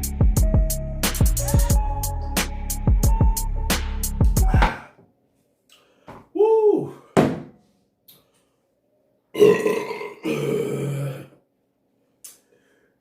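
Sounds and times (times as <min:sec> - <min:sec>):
man belching loudly: 0:09.4 - 0:11.4.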